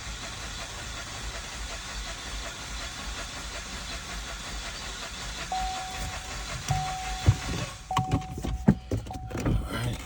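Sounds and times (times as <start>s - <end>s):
car engine cranking: 0.0s - 10.0s
warning chime: 5.6s - 8.4s.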